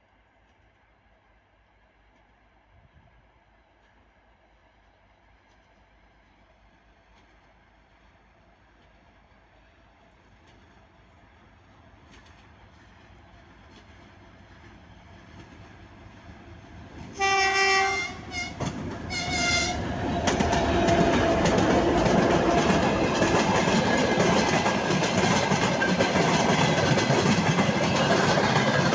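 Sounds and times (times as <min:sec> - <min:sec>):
diesel locomotive engine: 0:09.9 - 0:28.9
locomotive horn: 0:17.2 - 0:21.6
wheels clattering over rail joints: 0:18.3 - 0:28.9.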